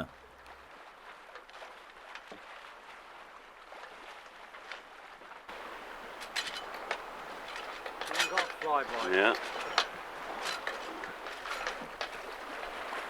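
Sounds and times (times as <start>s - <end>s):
water and wind rushing: 0.0s - 13.0s.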